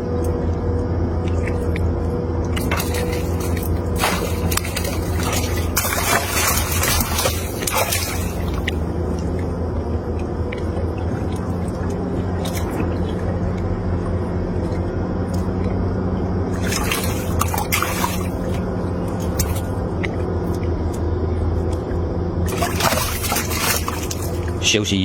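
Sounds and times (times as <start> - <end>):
low motor hum: 0.0 - 25.0
water splashing and sloshing: 0.0 - 25.0.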